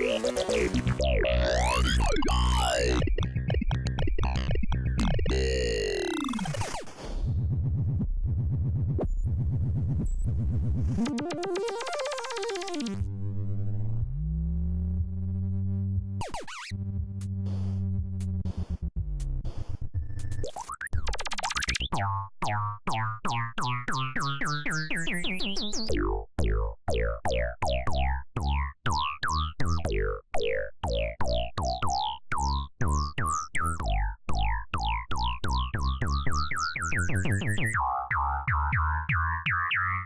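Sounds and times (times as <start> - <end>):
quick beat of falling hits: 0.0 - 6.4, 9.1 - 12.8, 16.2 - 39.7
synthesizer tones sliding upward: 10.9 - 13.1.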